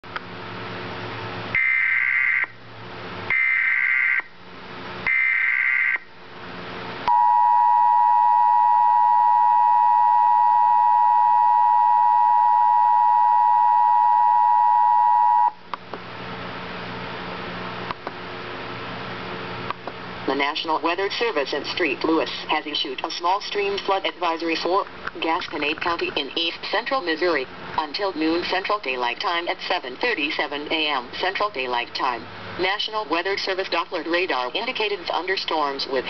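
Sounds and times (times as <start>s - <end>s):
two-tone attention signal: 7.1s - 15.6s
radio hiss: 20.2s - 36.0s.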